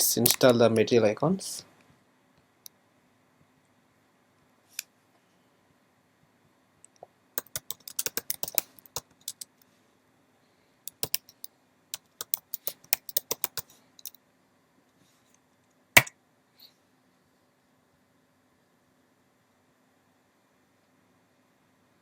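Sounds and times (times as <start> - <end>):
computer keyboard typing: 7.4 - 9.5, 10.9 - 14.2.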